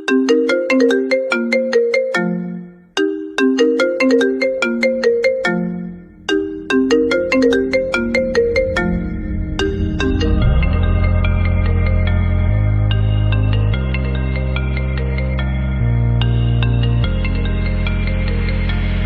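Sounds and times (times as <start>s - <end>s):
phone ringtone mallet melody: 0.0s - 19.0s
low hum: 5.9s - 15.4s.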